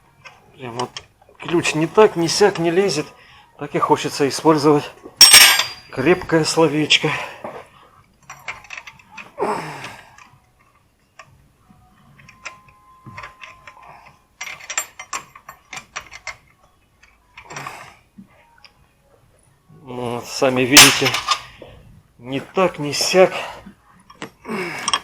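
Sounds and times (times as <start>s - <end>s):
metal wrench clicking: 5.2s - 6.0s, 8.2s - 9.3s, 14.4s - 17.7s.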